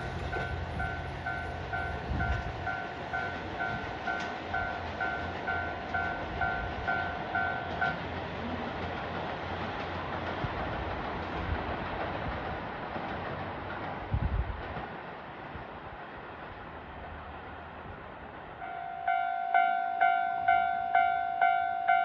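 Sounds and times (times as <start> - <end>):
diesel train rumbling: 0.0 - 22.0
level crossing alarm dinging: 18.6 - 22.0.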